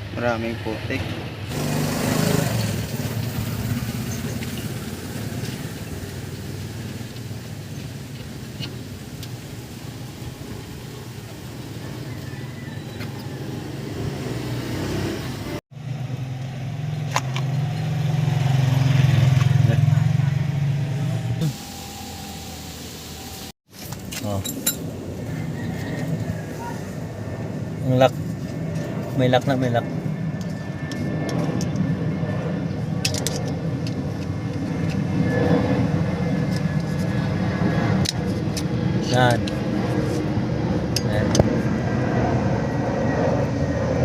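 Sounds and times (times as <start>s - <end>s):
vehicle engine drone: 0.0s - 44.0s
driveline humming: 21.0s - 23.5s.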